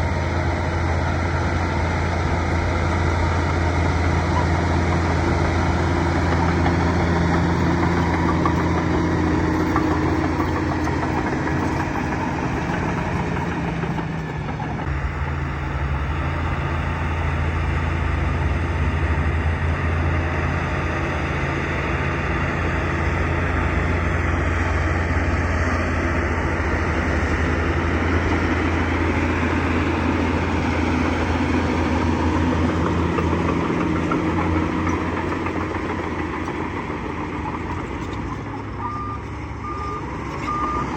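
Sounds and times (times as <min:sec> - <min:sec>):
bulldozer diesel engine running: 0:00.0 - 0:40.9.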